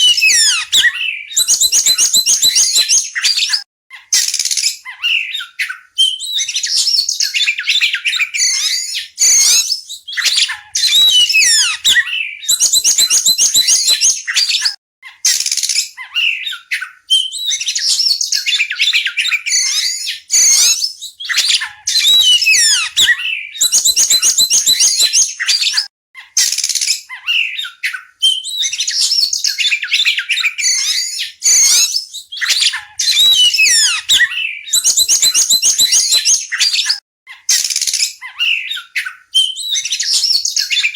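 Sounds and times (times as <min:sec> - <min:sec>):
bird singing: 0:00.0 - 0:03.5, 0:04.8 - 0:14.6, 0:16.0 - 0:25.8, 0:27.1 - 0:36.9, 0:38.2 - 0:40.9.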